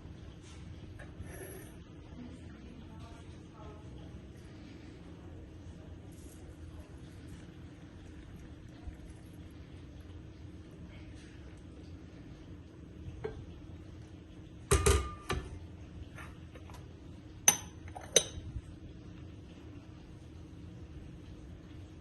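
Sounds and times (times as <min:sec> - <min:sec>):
kitchenware tap: 0:14.7 - 0:15.6.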